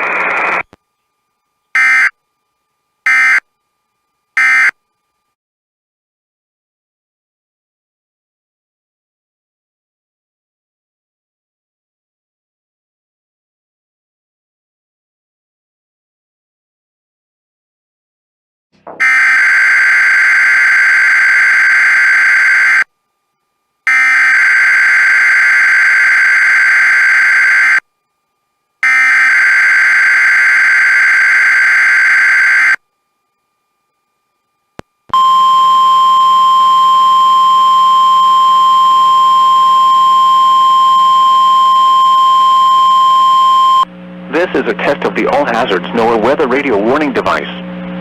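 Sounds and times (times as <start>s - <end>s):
steady warning alarm tone: 1.4s - 5.1s, 19.0s - 23.0s, 23.6s - 43.9s.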